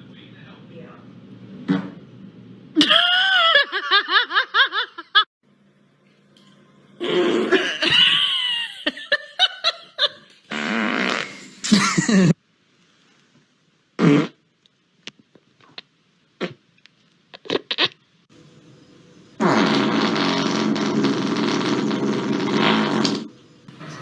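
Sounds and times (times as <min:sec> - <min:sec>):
farting: 0:01.6 - 0:02.0, 0:07.0 - 0:07.8, 0:10.5 - 0:11.6, 0:14.0 - 0:14.4, 0:16.4 - 0:16.6, 0:17.4 - 0:18.0, 0:19.4 - 0:24.0
laughter: 0:02.8 - 0:05.3, 0:07.5 - 0:10.3, 0:11.6 - 0:12.4.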